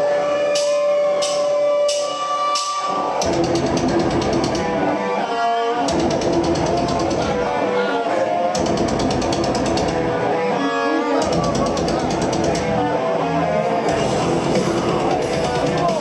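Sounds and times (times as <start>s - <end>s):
held guitar notes: 0.0s - 16.0s
live rock band: 0.0s - 16.0s
fast drumming: 3.2s - 4.8s, 5.9s - 7.5s, 8.6s - 10.1s, 11.2s - 12.8s, 13.9s - 16.0s.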